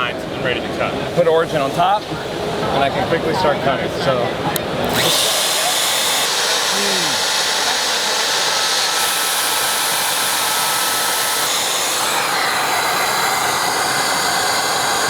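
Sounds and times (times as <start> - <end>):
router whirring: 4.6 - 15.0.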